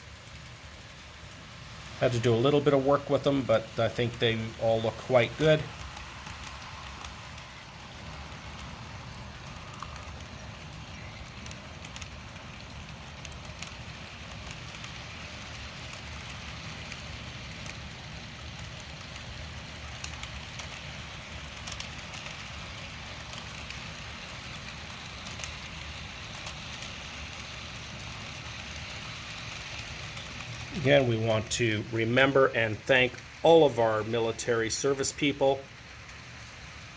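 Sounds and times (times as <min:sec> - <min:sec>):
crackly hiss: 0:00.0 - 0:36.9
model train rumbling on track: 0:00.0 - 0:36.9
light clicks: 0:05.2 - 0:30.8.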